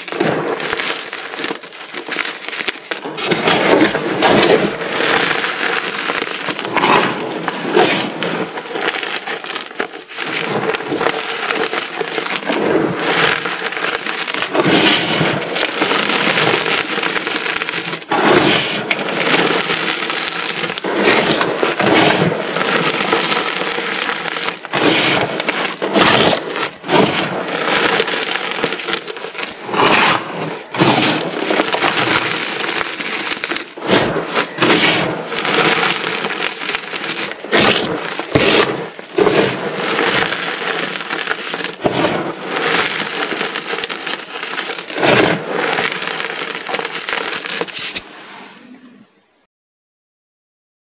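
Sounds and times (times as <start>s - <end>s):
chalk crunching and crumbling: 0.0s - 48.1s.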